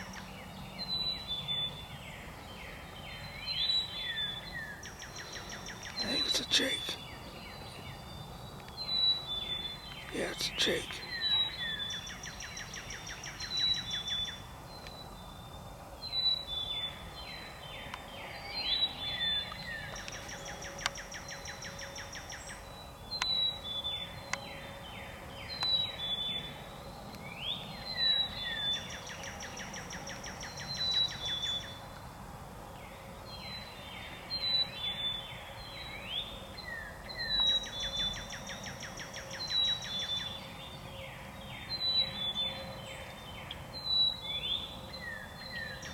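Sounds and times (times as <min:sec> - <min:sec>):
songbird singing: 0:00.0 - 0:45.9
steady background hush: 0:05.9 - 0:07.7, 0:09.9 - 0:11.2.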